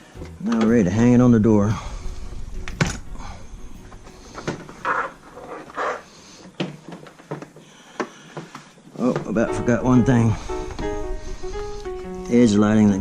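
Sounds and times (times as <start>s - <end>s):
heavy breathing: 1.7s - 6.6s, 10.3s - 12.2s.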